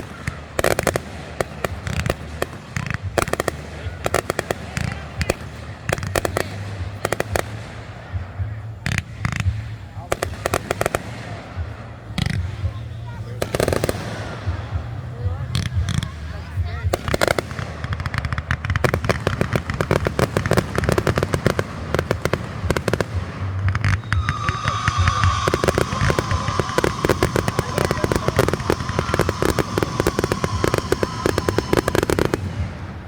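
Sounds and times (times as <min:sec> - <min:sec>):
fireworks popping and crackling: 0:00.0 - 0:33.0
firework whistle dropping in pitch: 0:23.9 - 0:33.0.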